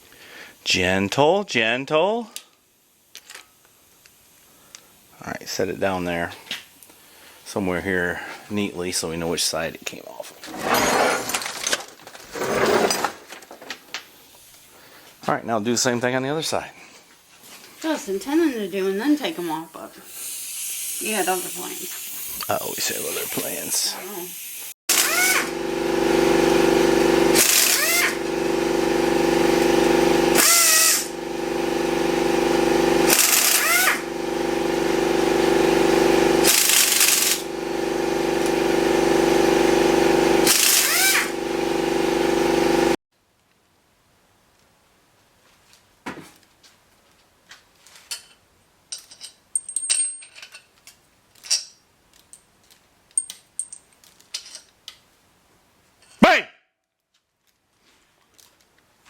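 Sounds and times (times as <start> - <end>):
power tool buzzing and rattling: 10.4 - 13.7, 24.9 - 43.0
socket wrench metallic clinks: 48.9 - 50.7, 53.1 - 54.7.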